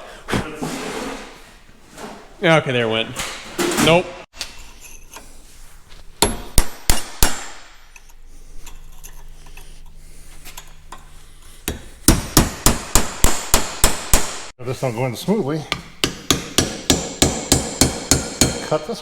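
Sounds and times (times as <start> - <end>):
hammer striking metal: 6.2 - 7.8, 11.7 - 14.5, 15.7 - 18.9.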